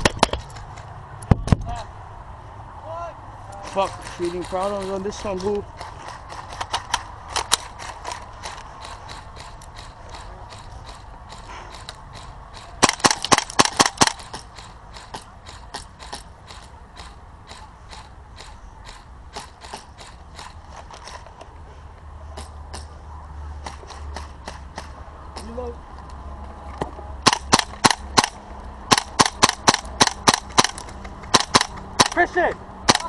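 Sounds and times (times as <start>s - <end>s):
airsoft guns firing: 4.0s - 20.6s, 27.2s - 32.3s.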